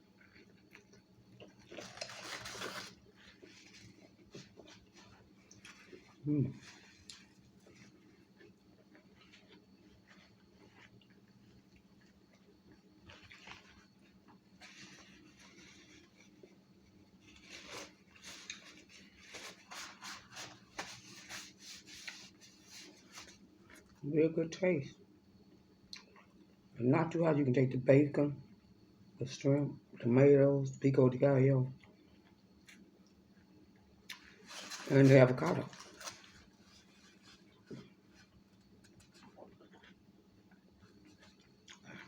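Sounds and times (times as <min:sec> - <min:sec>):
chewing with wet mouth noises: 0:00.0 - 0:02.1, 0:03.2 - 0:15.1, 0:37.4 - 0:42.0
food crunching: 0:00.0 - 0:21.1, 0:34.0 - 0:42.0
steady low hum: 0:00.0 - 0:42.0.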